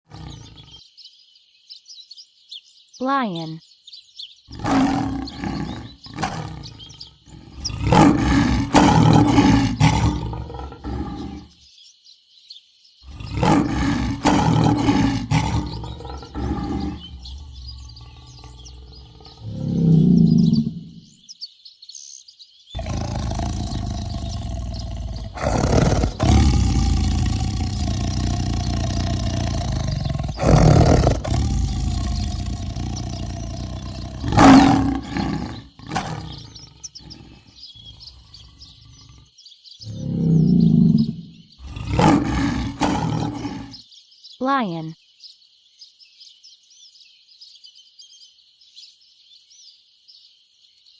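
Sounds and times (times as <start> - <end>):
lions roaring and growling: 0.0 - 0.8, 4.5 - 11.5, 13.1 - 21.0, 22.8 - 43.8.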